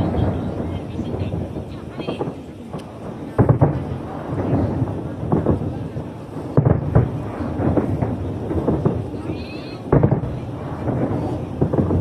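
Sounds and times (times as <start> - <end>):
fireworks booming: 0.0 - 12.0.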